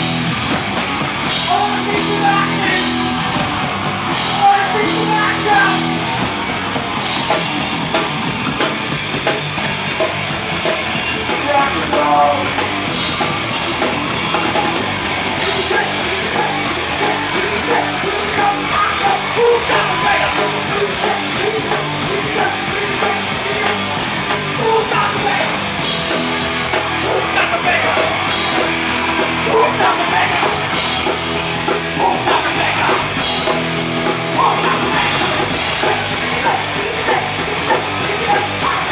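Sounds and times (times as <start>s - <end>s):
drum kit: 0.0s - 38.9s
rock band playing: 0.0s - 38.9s
person singing: 15.4s - 25.6s, 29.4s - 30.6s, 34.3s - 38.9s.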